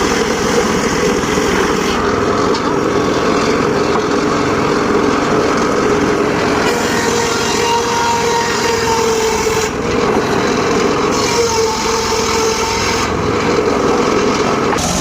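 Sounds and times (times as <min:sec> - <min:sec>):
circular saw cutting wood: 0:06.6 - 0:13.3.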